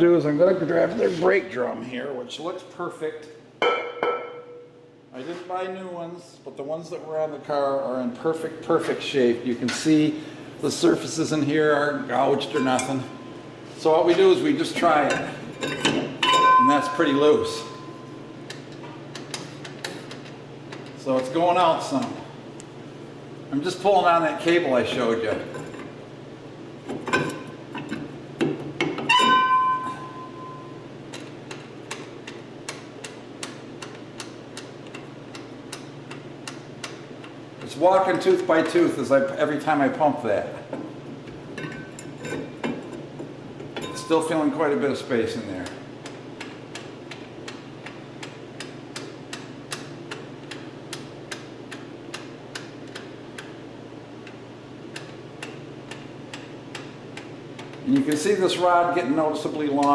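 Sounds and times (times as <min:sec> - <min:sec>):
low steady hum: 0:00.0 - 0:59.9
struck metal part ringing: 0:03.6 - 0:04.7, 0:16.2 - 0:18.1, 0:29.1 - 0:30.8.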